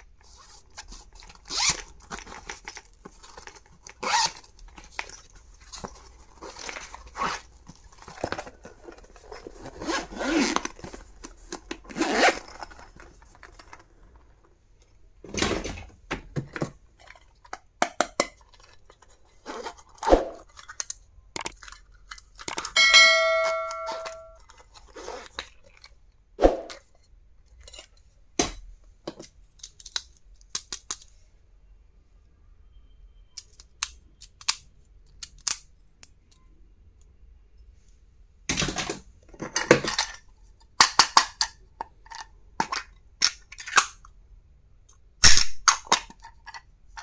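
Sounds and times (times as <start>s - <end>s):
packaging rustling: 0.0s - 14.4s
ringing multi-tone ding: 22.8s - 24.4s.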